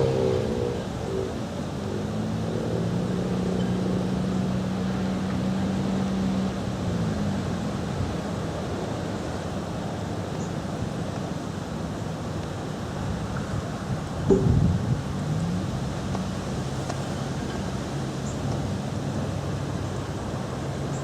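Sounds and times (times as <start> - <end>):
wind noise on microphone: 12.6 - 21.0.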